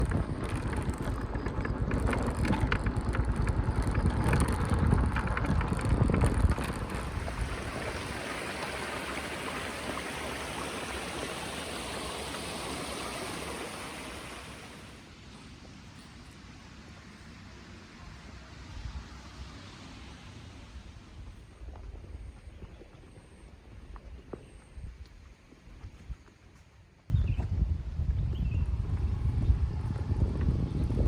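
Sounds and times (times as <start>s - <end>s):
water rushing: 6.5s - 15.1s.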